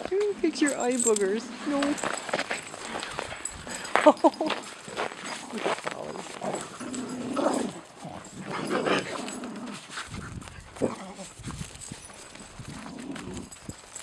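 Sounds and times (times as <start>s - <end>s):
dogs scuffling: 0.0s - 14.0s
dogs grumbling: 1.2s - 10.0s, 10.6s - 11.4s, 12.6s - 13.6s.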